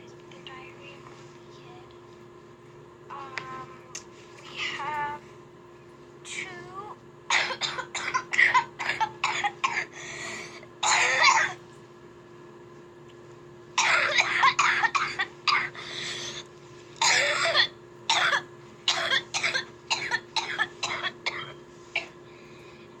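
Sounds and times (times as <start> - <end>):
person coughing: 7.3 - 9.9, 10.8 - 11.6, 13.8 - 16.4, 17.0 - 22.2.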